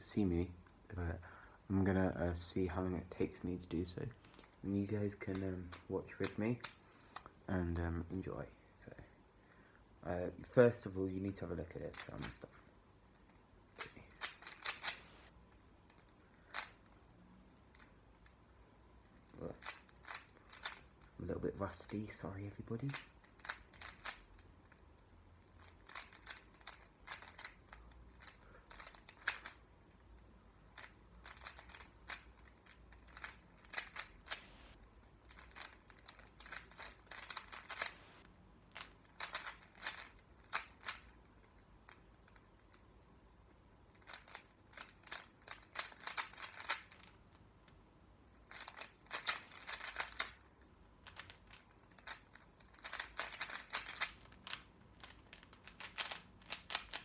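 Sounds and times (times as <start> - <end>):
puzzle cube plastic clicks: 11.3 - 12.4, 13.1 - 18.4, 19.0 - 38.1, 38.7 - 42.9, 43.5 - 57.0.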